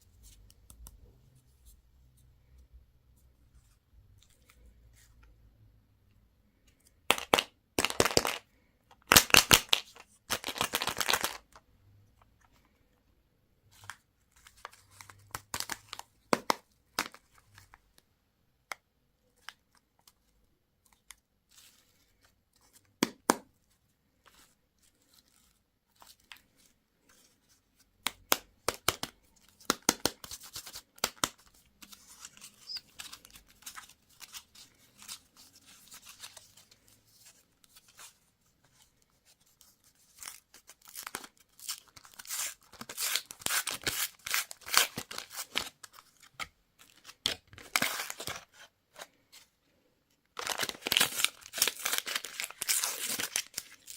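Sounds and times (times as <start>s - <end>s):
packaging crinkling: 50.4s - 53.9s
packaging tearing: 50.4s - 53.9s.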